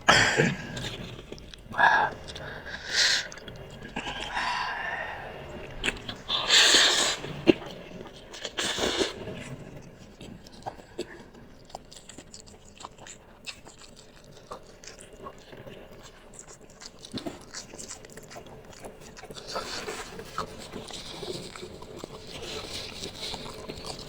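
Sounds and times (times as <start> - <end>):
hissy mouth sounds: 0.0 - 9.6
person chewing noodles: 0.0 - 24.0.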